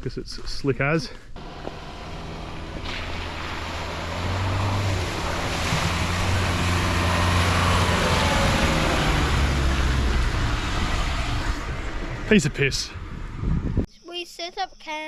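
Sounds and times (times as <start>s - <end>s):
mud and water splashing: 1.4s - 12.0s
vehicle engine pulling: 1.4s - 13.8s.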